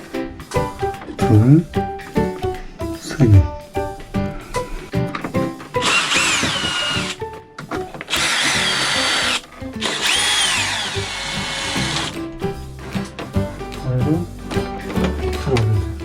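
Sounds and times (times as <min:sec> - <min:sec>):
cordless drill whining: 0:05.8 - 0:07.2, 0:08.1 - 0:12.2.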